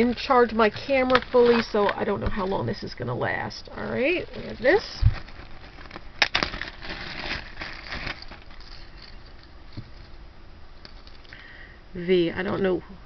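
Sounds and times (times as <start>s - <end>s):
plastic bag crinkling: 0.0s - 2.9s, 3.5s - 10.2s.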